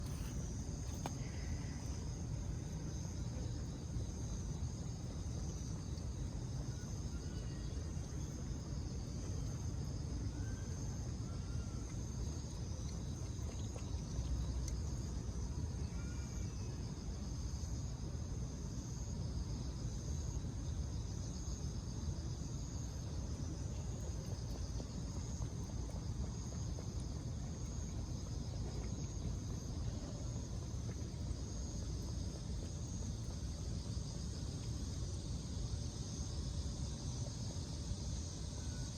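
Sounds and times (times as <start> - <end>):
insects chirring: 0.0 - 18.0, 18.9 - 38.9.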